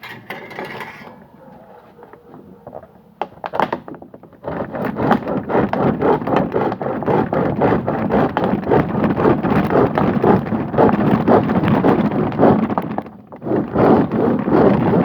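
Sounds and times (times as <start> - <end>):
wind flutter on microphone: 4.4 - 15.0.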